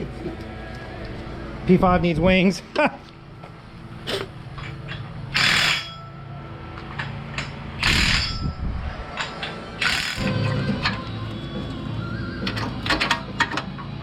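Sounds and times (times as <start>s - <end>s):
power tool bursts: 5.3s - 5.9s, 7.8s - 8.3s, 9.8s - 10.4s.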